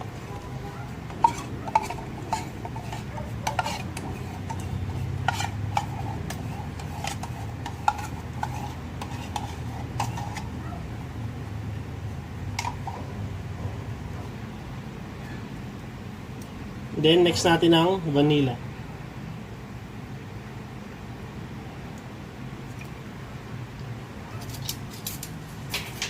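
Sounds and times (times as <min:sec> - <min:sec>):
utensil stirring in a pan: 0:00.0 - 0:11.1, 0:12.5 - 0:13.1
low steady hum: 0:00.0 - 0:25.8
utensil clinking against pan: 0:01.1 - 0:10.4.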